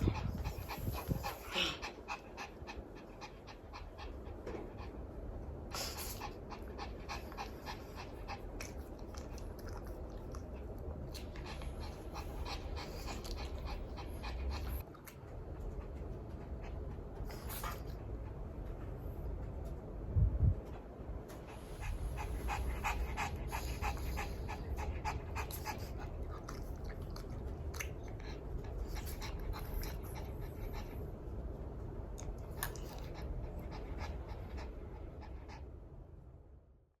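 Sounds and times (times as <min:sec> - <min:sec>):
small dog panting: 0:00.0 - 0:19.0, 0:21.3 - 0:31.5, 0:32.2 - 0:36.0.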